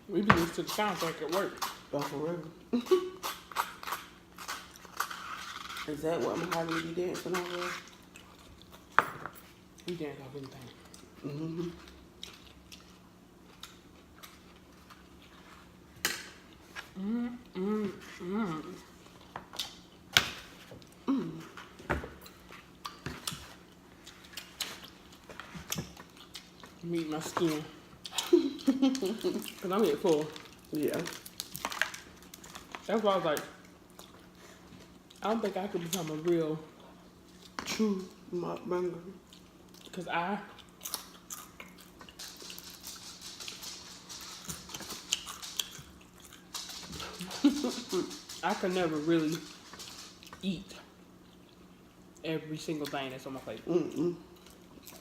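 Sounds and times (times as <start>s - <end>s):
faint steady hum: 0.0s - 55.0s
crunchy chewing and mouth smacks: 6.7s - 17.6s, 21.6s - 32.9s, 39.2s - 50.4s, 54.3s - 55.0s
person humming: 11.2s - 11.8s, 16.9s - 18.8s, 21.0s - 21.5s.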